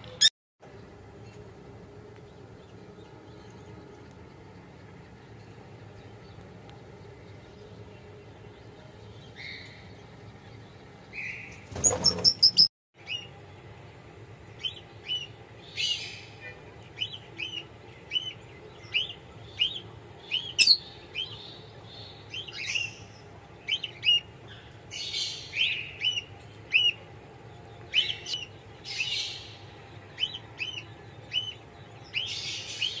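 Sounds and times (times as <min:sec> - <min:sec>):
small birds chirping: 0:02.1 - 0:33.0
rapid high-pitched bird notes: 0:17.1 - 0:21.4.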